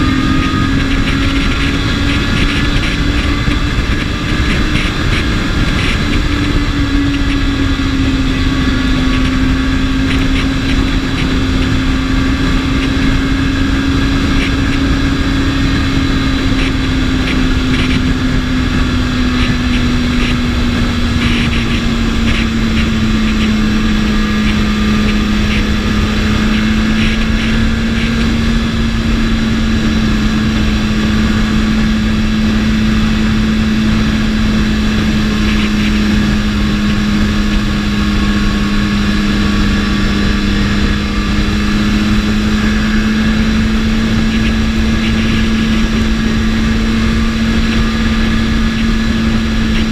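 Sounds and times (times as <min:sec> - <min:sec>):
motorcycle engine cruising: 0:00.0 - 0:49.9
wind rush on microphone: 0:00.0 - 0:49.9.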